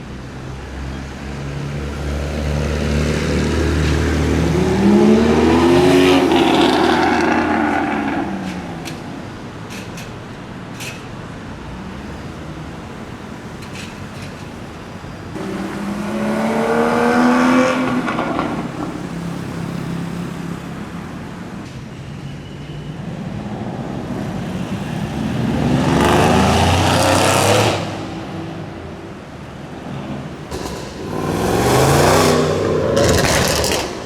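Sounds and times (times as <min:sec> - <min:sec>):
sports car engine accelerating: 0:02.1 - 0:08.8, 0:29.8 - 0:34.0.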